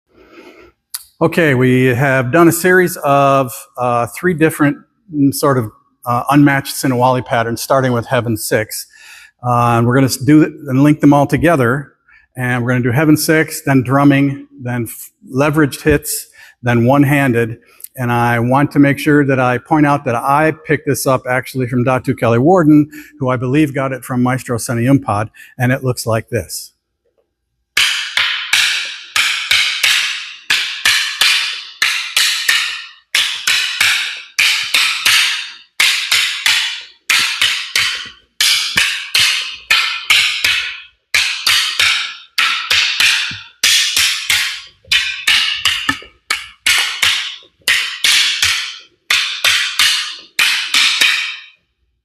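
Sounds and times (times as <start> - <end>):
wooden sticks clacking together: 27.8 - 51.6.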